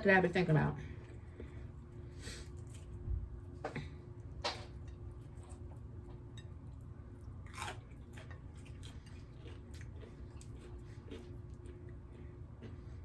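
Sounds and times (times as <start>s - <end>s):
crisp chewing crunches: 7.4s - 13.0s.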